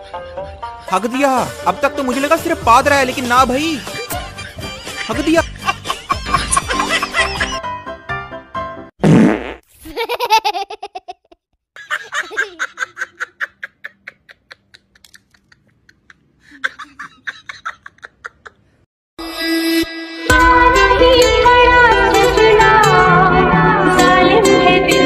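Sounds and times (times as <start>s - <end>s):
music: 0.0s - 8.9s, 19.2s - 25.0s
bursts of laughter: 4.2s - 7.6s, 9.8s - 18.7s
fart noise: 9.0s - 9.7s.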